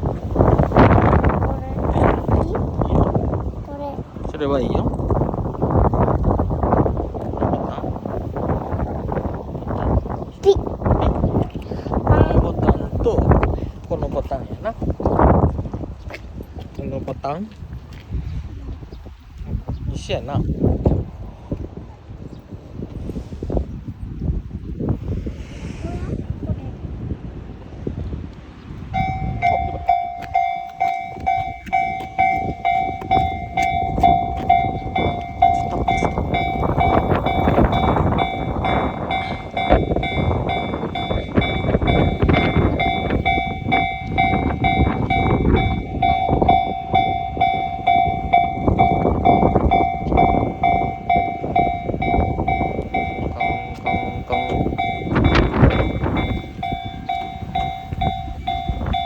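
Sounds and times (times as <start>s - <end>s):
train rumbling: 0.0s - 15.8s, 28.8s - 59.0s
level-crossing bell clanging: 28.9s - 59.0s.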